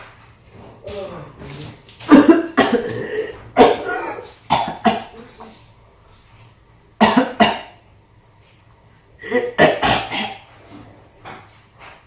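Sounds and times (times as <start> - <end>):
person coughing harshly: 2.1 - 5.2, 7.0 - 7.8, 9.2 - 10.5.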